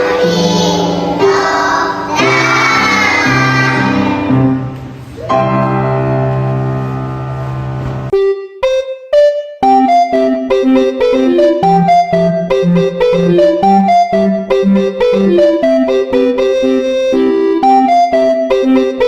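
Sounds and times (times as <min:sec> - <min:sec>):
children singing: 0:00.0 - 0:04.6
backing track: 0:00.0 - 0:19.0
keyboard notes: 0:00.0 - 0:19.0.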